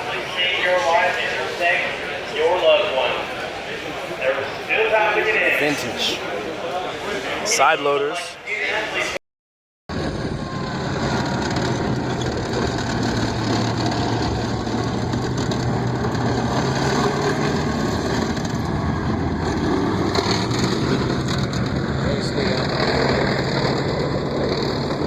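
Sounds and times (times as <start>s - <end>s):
engine running: 9.9s - 25.0s.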